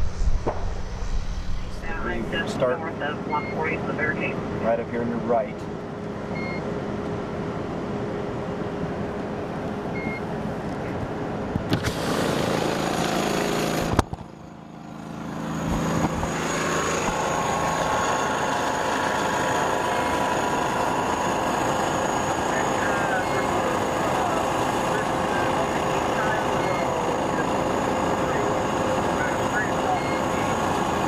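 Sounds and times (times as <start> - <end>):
faint high whine: 0.0 - 5.6, 22.0 - 27.6
vehicle running noise from inside: 0.0 - 31.0.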